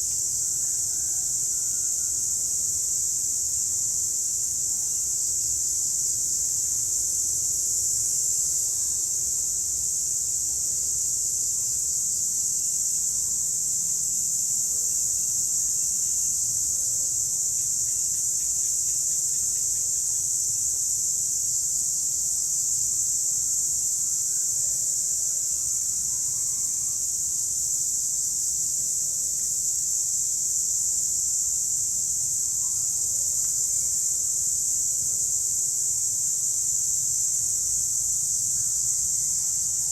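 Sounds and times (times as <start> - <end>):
cicadas buzzing: 0.0 - 12.0, 12.6 - 39.9.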